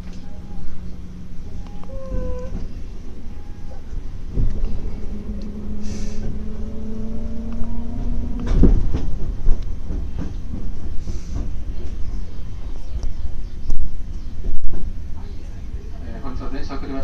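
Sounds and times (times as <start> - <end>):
train rumbling: 0.0 - 17.0
train wheels knocking: 8.2 - 12.2.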